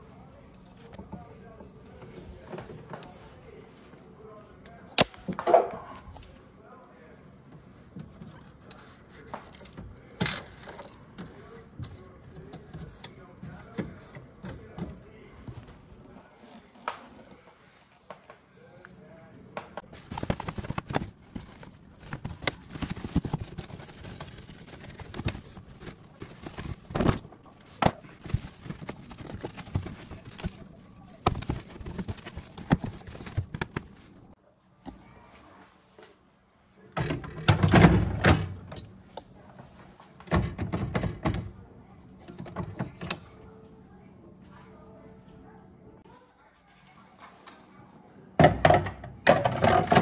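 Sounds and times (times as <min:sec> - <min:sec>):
small hard objects clattering: 0:20.0 - 0:27.2.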